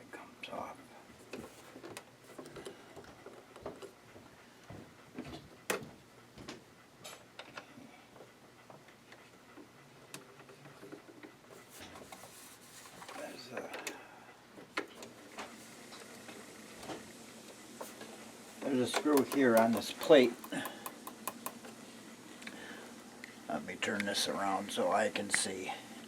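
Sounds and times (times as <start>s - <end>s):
sewing machine clicks and taps: 18.9s - 21.6s.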